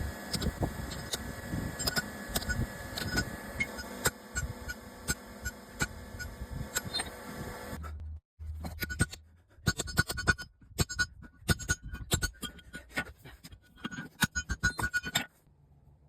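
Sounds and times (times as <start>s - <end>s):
steady hum: 0.0s - 8.1s.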